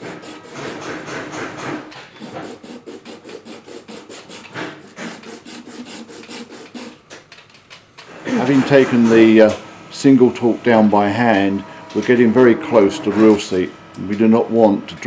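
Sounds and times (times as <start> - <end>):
sandpaper rubbing on cork: 0.0 - 1.0, 2.2 - 7.0.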